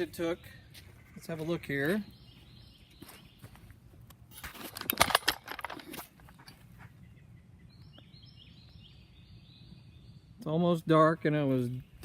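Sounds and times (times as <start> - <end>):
crunching and scuffing: 0.6 - 7.0.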